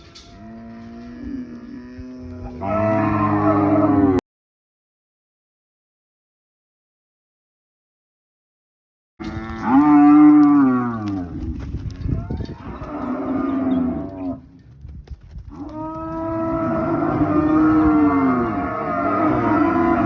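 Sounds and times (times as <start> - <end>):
cattle mooing: 0.0 - 4.2, 9.2 - 11.4, 12.2 - 14.4, 15.5 - 20.0.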